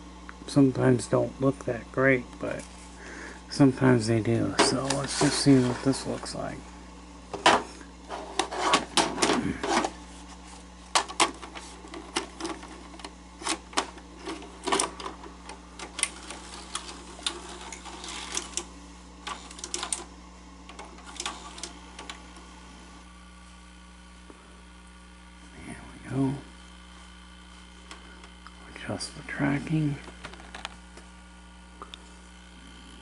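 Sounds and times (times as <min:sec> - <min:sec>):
faint steady hum: 0:00.0 - 0:33.0
cassette deck mechanical clicks: 0:04.4 - 0:05.2, 0:10.9 - 0:22.5, 0:30.0 - 0:31.1.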